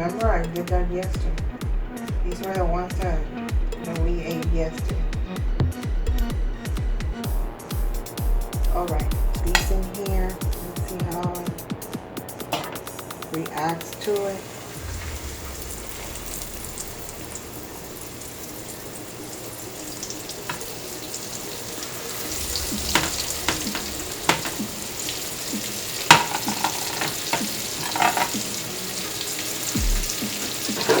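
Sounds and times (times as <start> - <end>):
oil popping: 9.3 - 31.0
chicken frying in hot oil: 13.2 - 31.0.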